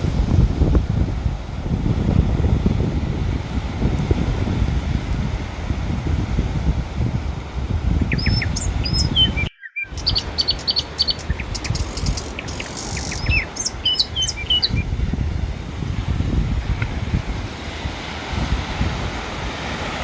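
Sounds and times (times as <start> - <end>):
surf rumble: 0.0 - 20.0
wind on microphone: 0.0 - 20.0
small birds chirping: 8.1 - 15.0.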